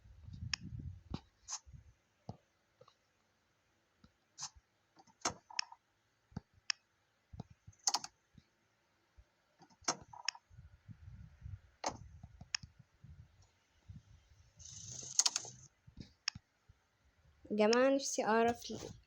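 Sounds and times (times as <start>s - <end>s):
low rumble: 0.0s - 1.2s.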